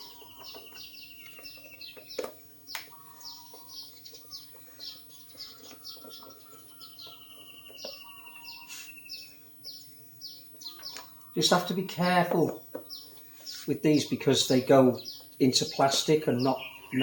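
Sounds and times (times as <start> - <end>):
bird trills: 0.0 - 17.0
birds chirping: 0.0 - 17.0.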